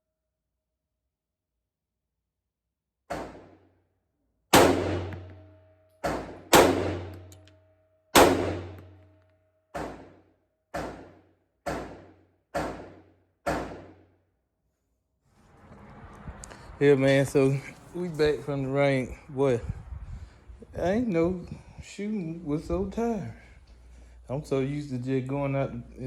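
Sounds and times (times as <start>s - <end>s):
gunshots: 3.1s - 3.6s, 4.5s - 7.4s, 8.2s - 9.0s.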